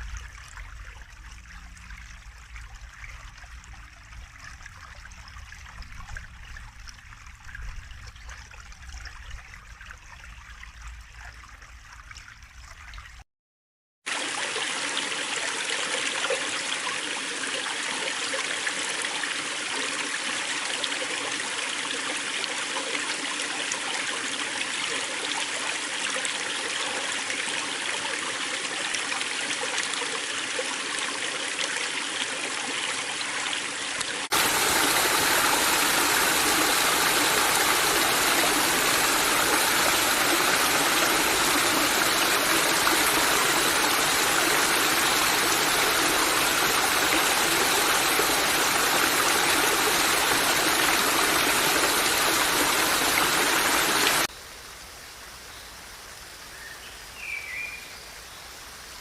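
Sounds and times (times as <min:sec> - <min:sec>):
stream water trickling: 0:00.0 - 0:13.3, 0:14.0 - 0:54.4
rushing stream: 0:14.1 - 0:54.3.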